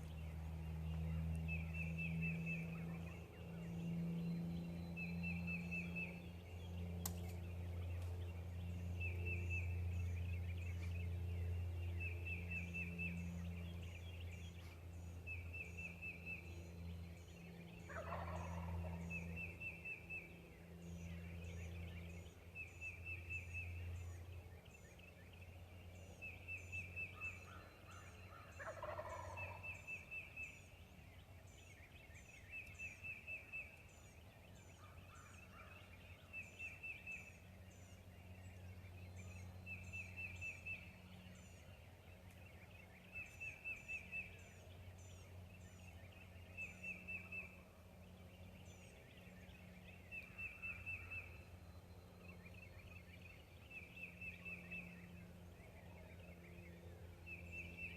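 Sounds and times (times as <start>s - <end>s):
songbirds trilling and chipping: 0.0s - 57.9s
steady low hum: 0.0s - 57.9s
wild turkey gobbling: 17.9s - 19.0s, 28.4s - 29.7s.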